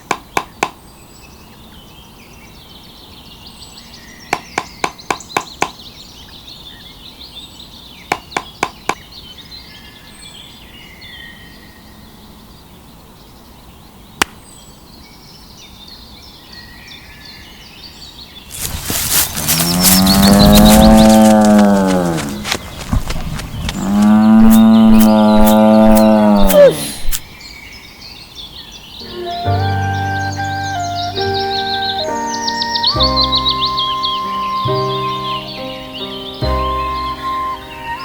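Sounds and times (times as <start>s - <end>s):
cow mooing: 18.6s - 22.5s, 23.7s - 27.0s.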